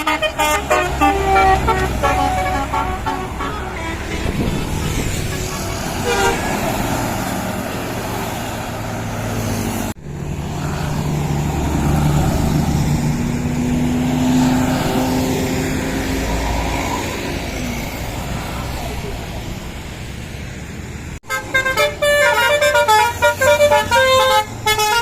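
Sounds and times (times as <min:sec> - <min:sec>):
multi-tone bus horn: 0:00.0 - 0:07.4, 0:21.2 - 0:25.0
heavy bus engine droning: 0:00.0 - 0:25.0
road noise from buses: 0:00.0 - 0:25.0.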